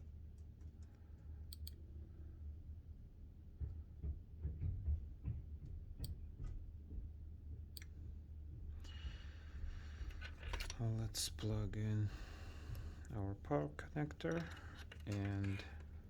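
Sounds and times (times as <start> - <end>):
hands handling small parts: 13.9 - 16.0.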